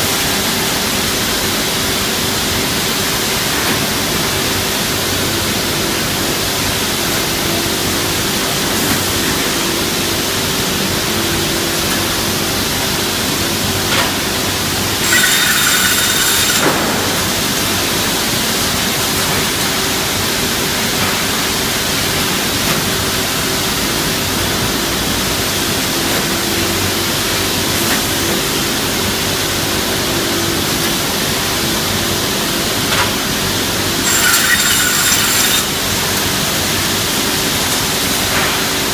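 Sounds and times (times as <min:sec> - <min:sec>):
saw running: 0:14.8 - 0:16.9, 0:34.0 - 0:35.8.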